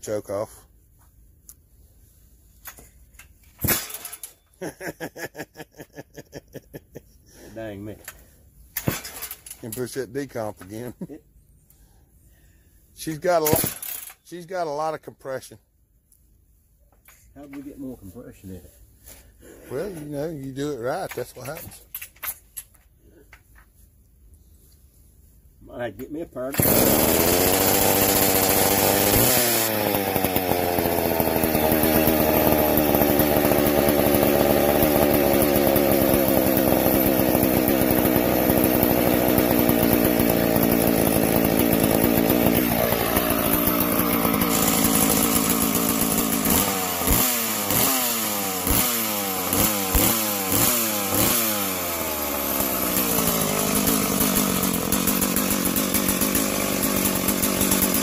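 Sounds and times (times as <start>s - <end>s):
chainsaw running: 3.5s - 6.7s, 7.3s - 11.2s, 13.0s - 14.9s, 19.1s - 22.3s, 26.4s - 58.0s.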